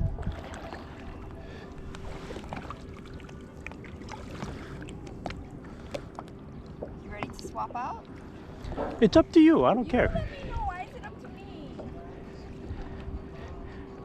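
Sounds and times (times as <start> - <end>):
wind noise: 0.0 - 0.6, 8.6 - 10.8
paddle splashes: 0.2 - 9.1
water drips and ticks: 2.6 - 8.2.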